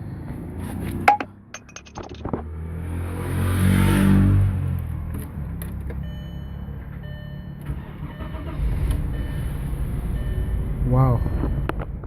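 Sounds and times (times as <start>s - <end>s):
car engine starting and idling: 4.9s - 12.0s.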